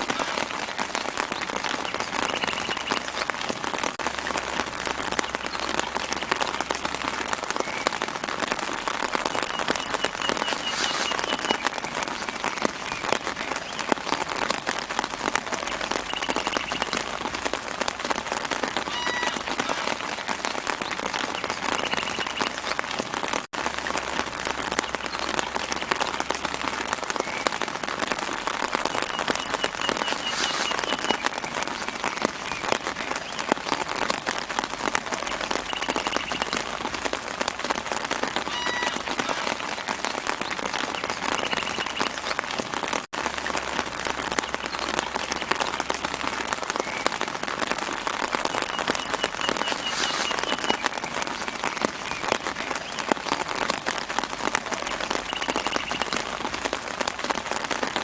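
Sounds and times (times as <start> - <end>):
light rain on leaves: 0.0 - 58.0
faint bird chirps: 16.1 - 17.0.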